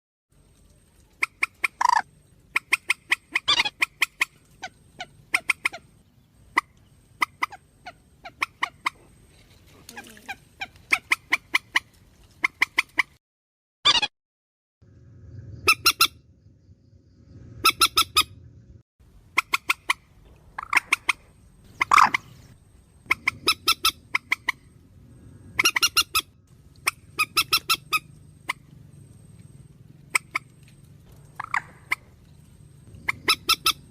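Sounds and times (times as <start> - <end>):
recorded bird clucking calls: 1.2 - 13.2, 19.3 - 24.8, 25.6 - 28.7, 30.0 - 33.9
faint steady hum: 18.3 - 33.9.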